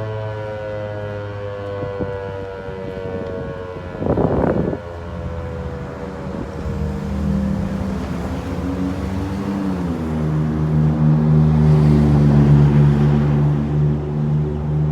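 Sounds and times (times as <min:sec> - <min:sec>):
warning siren winding down: 0:00.0 - 0:13.9
vehicle engine hum: 0:03.8 - 0:14.9.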